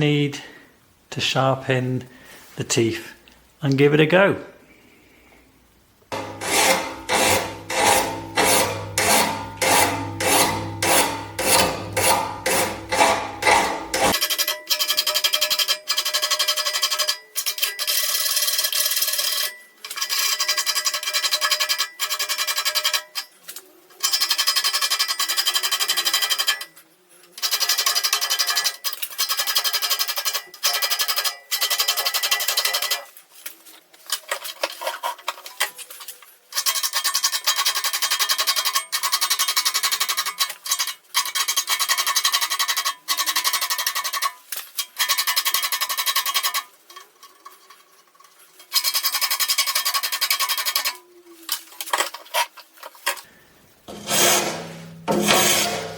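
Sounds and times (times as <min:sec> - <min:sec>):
file rasping on saw teeth: 0:06.1 - 0:14.2, 0:53.9 - 0:55.9
steel saw plate ringing: 0:06.1 - 0:17.8, 0:53.9 - 0:55.9.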